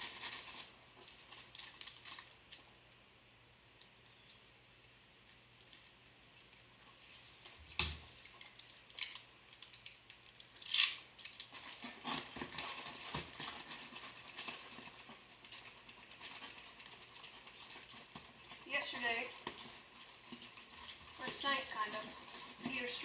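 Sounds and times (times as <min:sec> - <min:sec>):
plastic bag crinkling: 0:00.0 - 0:02.6, 0:08.1 - 0:23.0.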